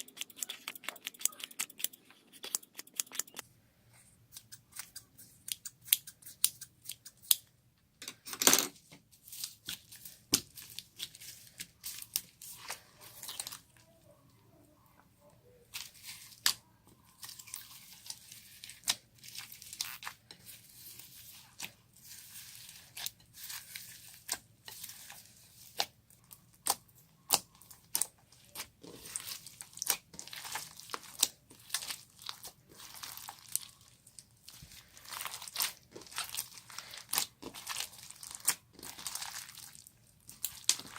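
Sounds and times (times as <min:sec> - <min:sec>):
slime crackling and popping: 0:21.4 - 0:40.9.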